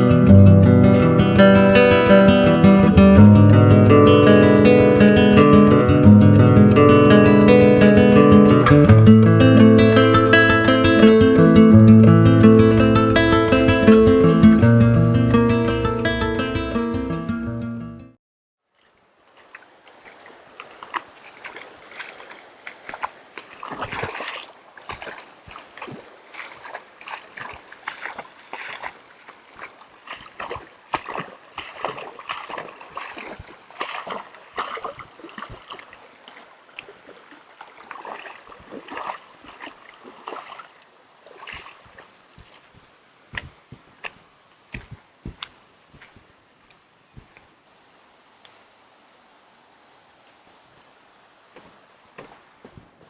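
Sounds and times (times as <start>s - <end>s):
water splashing and sloshing: 0.0s - 17.1s, 18.7s - 48.6s.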